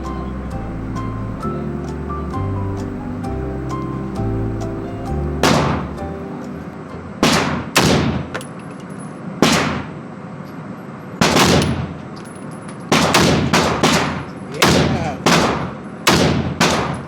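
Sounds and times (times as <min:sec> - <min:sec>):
gunshots with echoing tail: 0:05.4 - 0:06.0, 0:07.2 - 0:08.4, 0:09.4 - 0:10.0, 0:11.2 - 0:12.0, 0:12.9 - 0:17.0.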